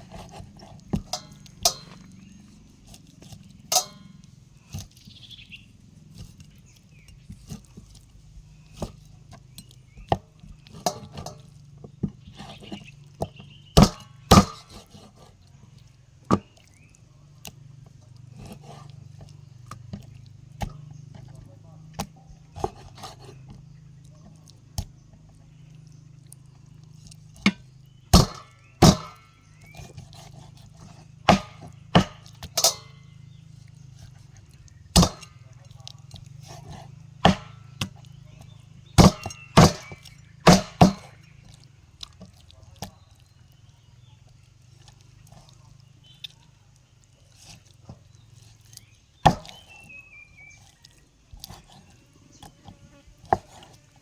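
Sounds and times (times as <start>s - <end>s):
knife chopping on wooden board: 0.0s - 2.1s, 12.0s - 15.3s, 22.0s - 23.6s, 27.4s - 33.0s, 34.9s - 35.4s, 36.2s - 38.0s, 38.9s - 41.2s, 49.3s - 49.8s, 52.4s - 53.8s.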